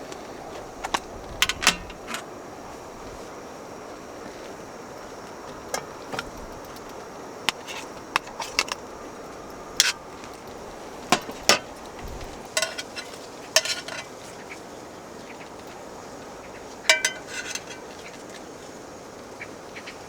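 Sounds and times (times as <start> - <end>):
metal utensils clinking on cookware: 0.7 - 2.2, 5.7 - 8.9, 9.5 - 14.2, 16.9 - 18.0.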